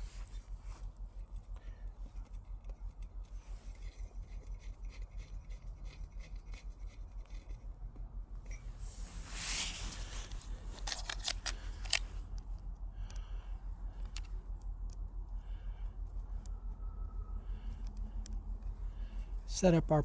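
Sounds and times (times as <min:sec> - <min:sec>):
rustle of handling: 0:00.0 - 0:04.3, 0:08.4 - 0:12.4
small metallic clicks and scraping: 0:00.0 - 0:08.7, 0:09.9 - 0:13.3, 0:13.9 - 0:15.0
steady low hum: 0:00.0 - 0:20.0.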